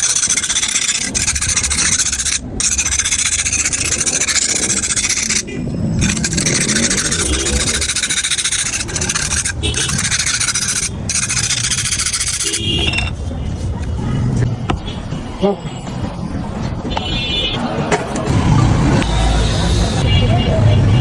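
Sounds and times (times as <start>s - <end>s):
glass being ground rasping: 0.0s - 14.4s.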